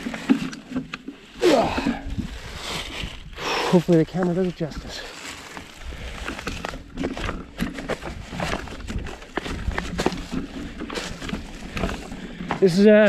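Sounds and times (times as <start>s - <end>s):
bike clattering over rocks: 5.4s - 13.0s.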